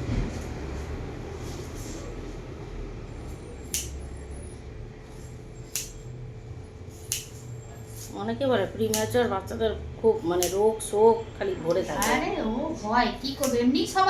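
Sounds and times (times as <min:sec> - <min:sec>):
scissors snipping hair: 0:03.6 - 0:04.1, 0:05.7 - 0:06.0, 0:07.0 - 0:08.2, 0:08.8 - 0:09.3, 0:10.3 - 0:10.8, 0:11.8 - 0:12.4, 0:13.3 - 0:13.8.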